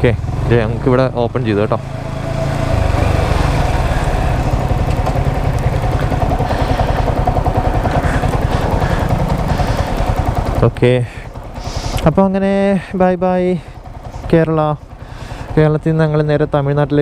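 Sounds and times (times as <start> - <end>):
motorcycle engine pulling away: 0.0 - 12.3.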